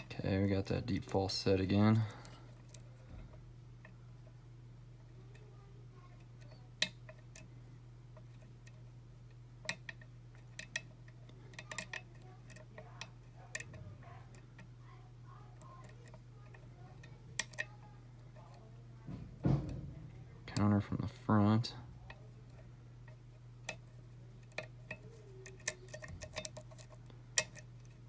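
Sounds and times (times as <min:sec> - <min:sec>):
steady low hum: 0:00.0 - 0:28.0
metallic clicks of lock picking: 0:09.6 - 0:13.7, 0:15.8 - 0:17.7, 0:22.1 - 0:28.0.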